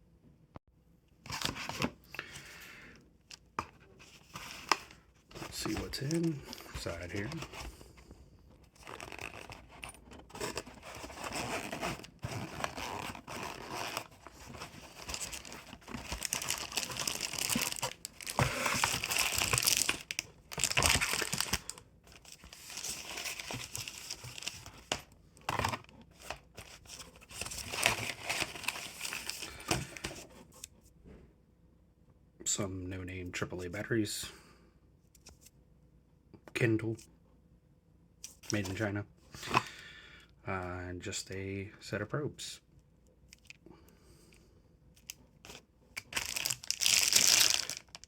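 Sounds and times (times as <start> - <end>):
plastic packaging crinkling: 8.7 - 25.0, 45.5 - 48.0
packaging tearing: 10.3 - 24.6, 46.0 - 48.0.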